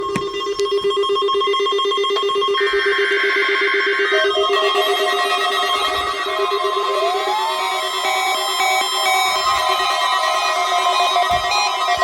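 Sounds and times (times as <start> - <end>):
rapid pulsing beep: 0.0 - 12.0
steady alarm tones: 0.0 - 12.0
weather radio alert alarms: 4.0 - 12.0.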